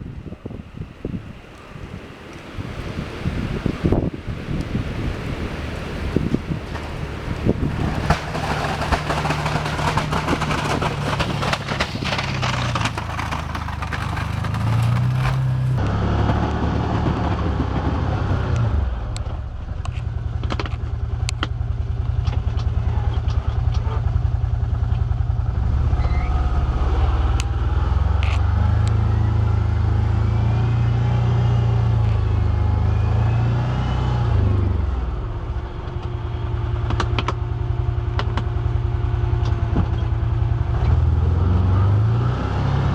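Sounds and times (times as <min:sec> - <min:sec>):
engine revving under load: 0:00.0 - 0:20.5, 0:22.4 - 0:42.9.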